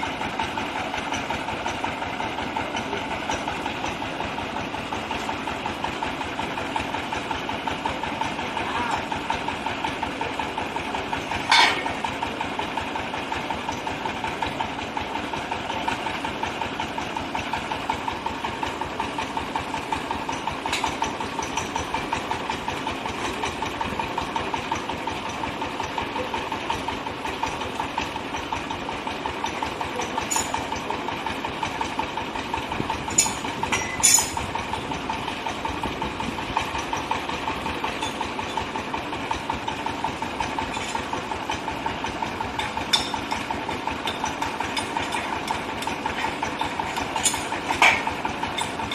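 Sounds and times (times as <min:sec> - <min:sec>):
drilling rig pulsing: 0:00.0 - 0:48.9
sharp metallic clanks: 0:11.3 - 0:12.2, 0:29.5 - 0:30.9, 0:33.0 - 0:34.6, 0:40.4 - 0:41.5, 0:42.5 - 0:48.9.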